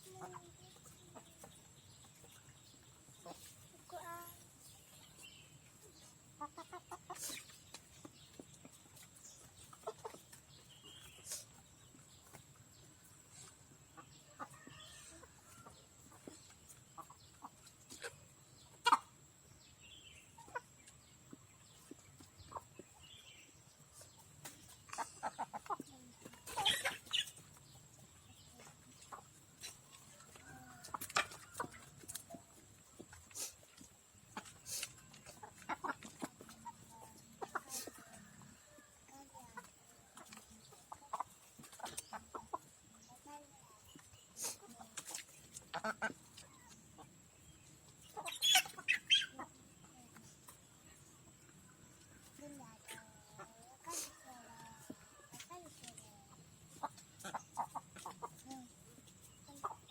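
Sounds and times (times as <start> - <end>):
hens clucking: 0.0 - 59.9.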